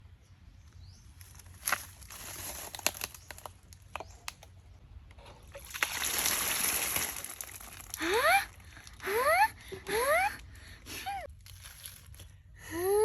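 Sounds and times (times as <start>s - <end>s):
water splashing and sloshing: 5.4s - 8.0s.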